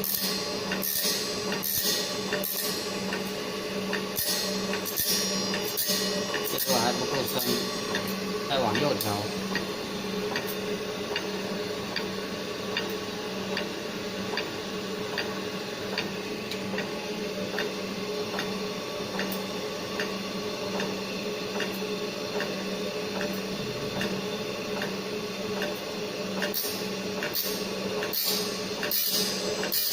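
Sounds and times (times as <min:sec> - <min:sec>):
grinder motor hum: 0:00.0 - 0:25.6.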